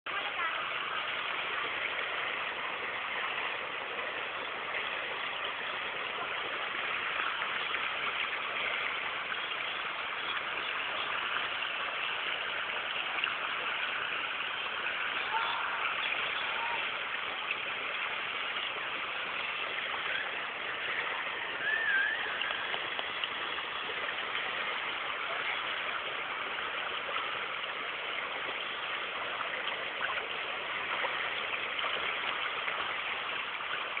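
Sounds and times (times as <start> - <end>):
river rushing: 0.1 - 34.0
wavering whistle: 20.9 - 23.0.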